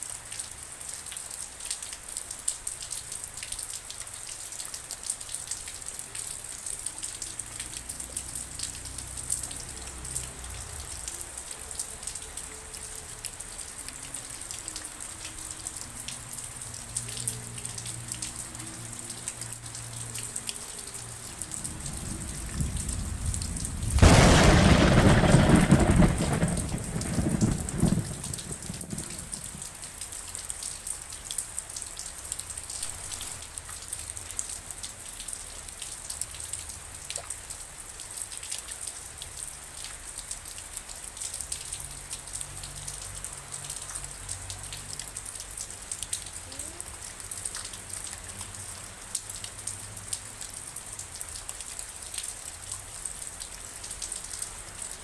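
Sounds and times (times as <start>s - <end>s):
steady rain: 0.0s - 55.0s
thunderclap rumbling: 21.2s - 29.8s.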